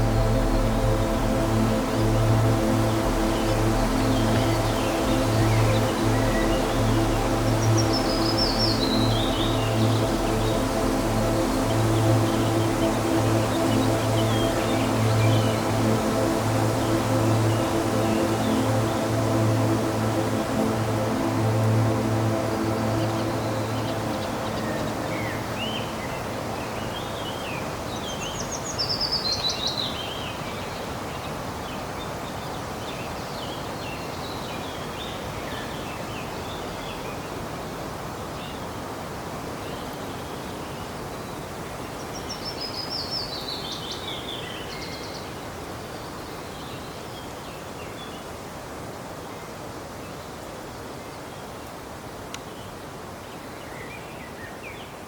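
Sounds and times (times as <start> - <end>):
waterfall rushing: 0.0 - 28.0
soft musical tones: 0.0 - 28.3.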